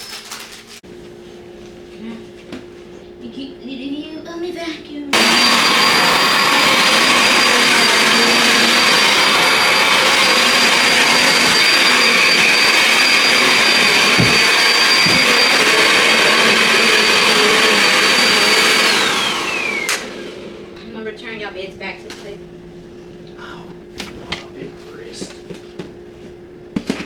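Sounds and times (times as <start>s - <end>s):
vacuum cleaner running: 0.8s - 27.0s
vacuum motor winding down: 5.1s - 21.8s.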